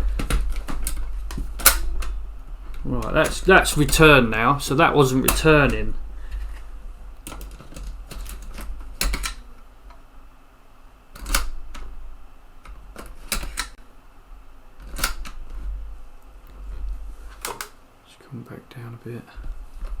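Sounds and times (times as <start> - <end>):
floppy drive eject mechanism clicking: 5.2 - 5.9, 11.2 - 11.9, 12.6 - 13.8, 17.4 - 17.8.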